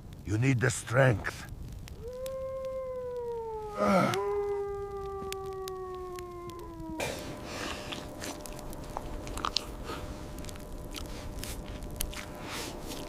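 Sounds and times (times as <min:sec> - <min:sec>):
long howl falling in pitch: 0:02.0 - 0:10.7
person chewing crunchy food: 0:07.0 - 0:13.0.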